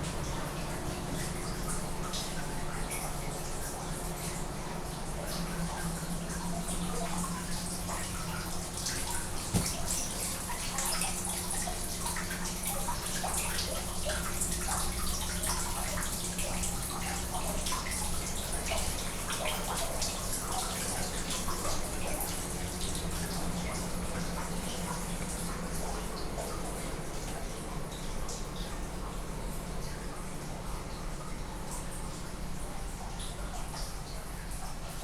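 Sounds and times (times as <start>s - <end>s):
water running and splashing: 7.3s - 27.5s.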